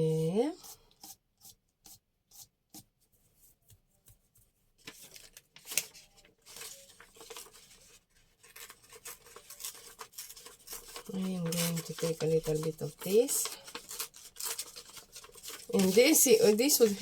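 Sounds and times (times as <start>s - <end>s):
paper rustling and crackling: 4.8s - 17.0s.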